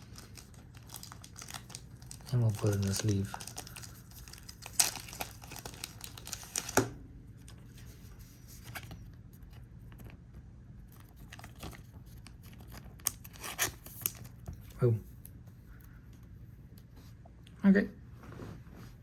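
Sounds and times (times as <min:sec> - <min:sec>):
cards and plastic rustling: 0:00.0 - 0:15.3.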